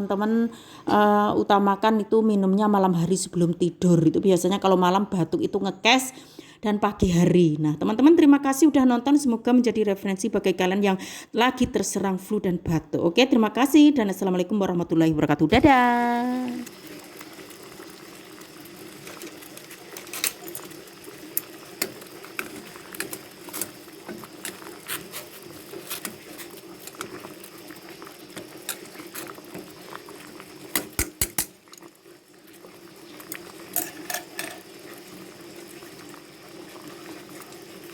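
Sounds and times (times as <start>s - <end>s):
water boiling in a pot: 15.0s - 37.9s
sharp pops and clicks: 30.7s - 31.9s.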